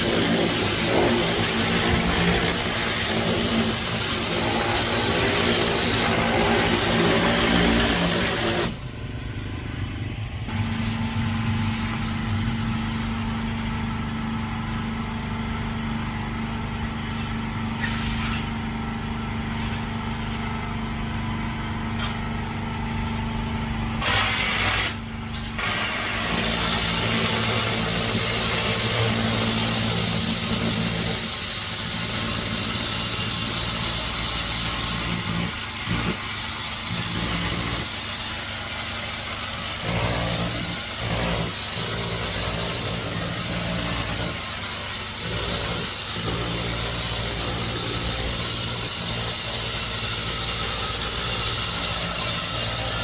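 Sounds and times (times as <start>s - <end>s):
water spray hissing: 0.0s - 8.8s, 24.0s - 53.0s
pressure washer engine hum: 0.0s - 53.0s.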